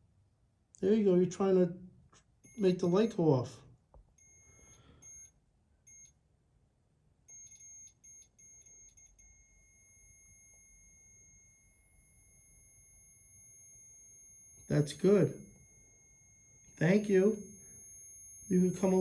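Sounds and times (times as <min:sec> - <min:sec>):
electronic sensor beeping: 0:02.4 - 0:03.3, 0:04.2 - 0:06.2, 0:07.3 - 0:19.0.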